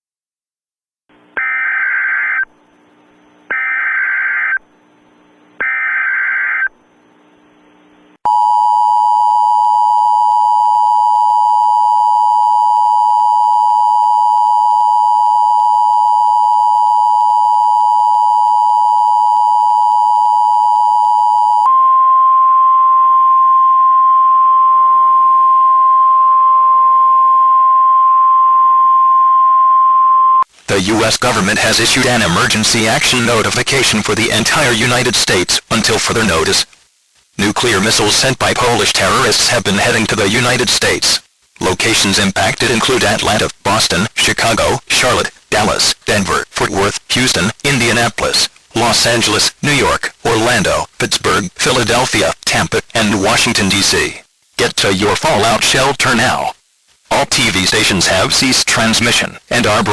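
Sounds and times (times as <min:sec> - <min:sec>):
warbling data bursts: 0:01.4 - 0:02.5, 0:03.5 - 0:04.7, 0:05.6 - 0:06.8.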